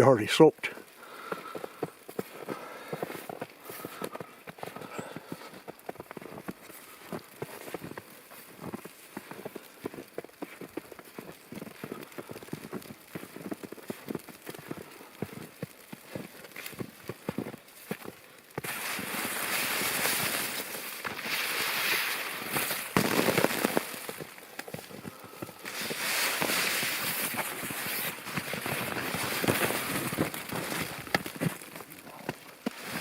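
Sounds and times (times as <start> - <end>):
footsteps in snow: 0.7 - 33.0
branches scraping umbrella: 18.6 - 33.0.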